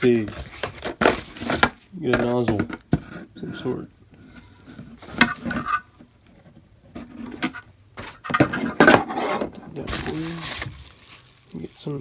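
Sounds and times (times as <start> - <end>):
plastic packaging crinkling: 9.8 - 12.0.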